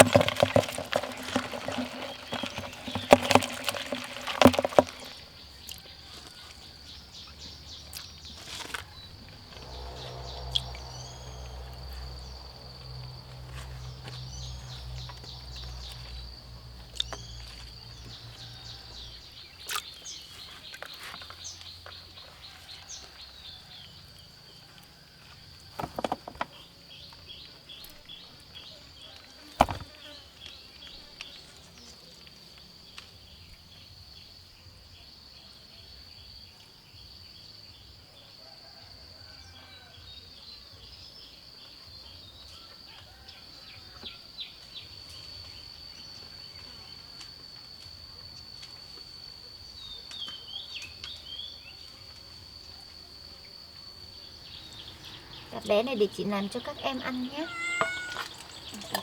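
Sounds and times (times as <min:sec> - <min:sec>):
knocks and clatter: 0:00.0 - 0:05.2
insects trilling: 0:00.0 - 0:59.0
bird calls: 0:53.8 - 0:59.0.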